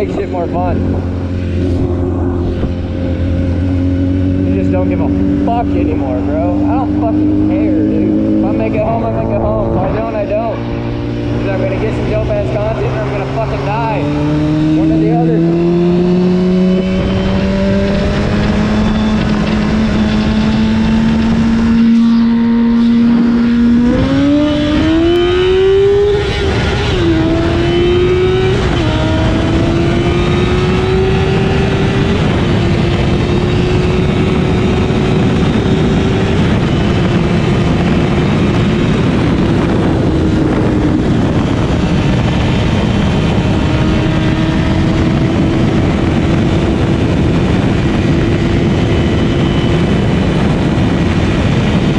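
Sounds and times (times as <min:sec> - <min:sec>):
motorcycle engine revving: 0:00.0 - 0:51.9
wind rushing: 0:00.0 - 0:51.9.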